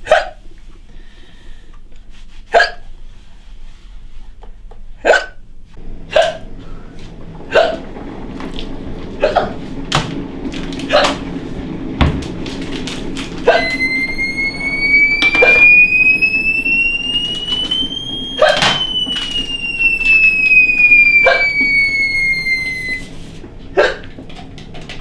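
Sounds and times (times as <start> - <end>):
person hiccuping: 2.6 - 2.8, 5.1 - 5.4, 6.1 - 6.4, 7.5 - 7.8, 23.8 - 24.1
steady low hum: 5.4 - 25.0
high whistle-like tone: 13.5 - 23.1.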